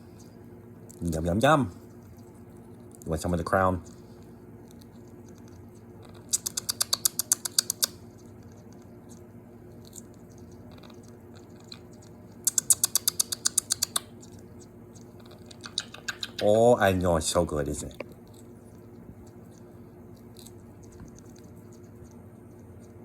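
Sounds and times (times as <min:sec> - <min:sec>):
faint steady hum: 0:00.0 - 0:23.0
parrot crunching food clicks: 0:03.8 - 0:16.6.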